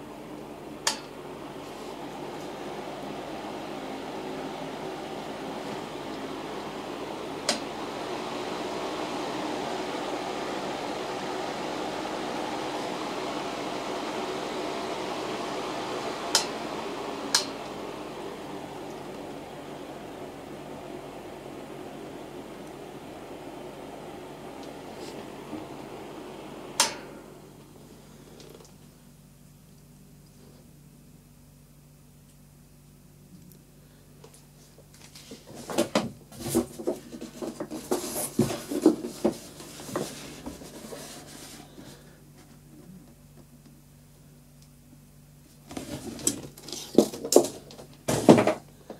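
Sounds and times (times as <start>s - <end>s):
desk fan whirring: 0.0s - 48.9s
faint motor hum: 0.0s - 48.9s
handling knocks and rustles: 34.4s - 43.0s, 45.6s - 48.9s.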